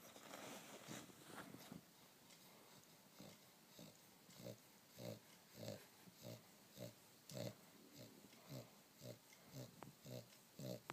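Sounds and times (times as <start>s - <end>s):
dog snoring: 2.7s - 10.9s.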